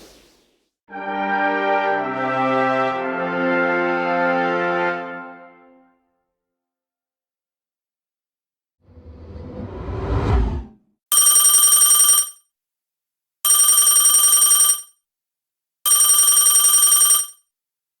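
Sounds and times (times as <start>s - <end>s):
rising whoosh: 8.9s - 10.8s
telephone bell ringing: 11.1s - 12.4s, 13.5s - 15.0s, 15.9s - 17.5s.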